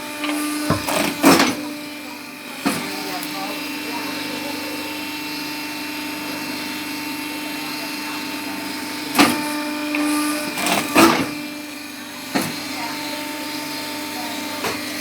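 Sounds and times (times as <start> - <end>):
cutting machine motor hum: 0.0 - 15.0.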